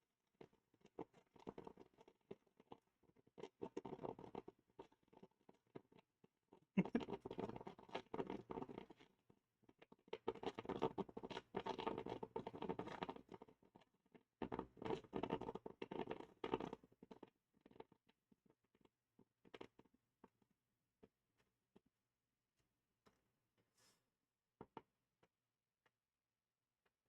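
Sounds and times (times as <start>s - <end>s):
coffee maker sputtering and gurgling: 0.2s - 21.1s.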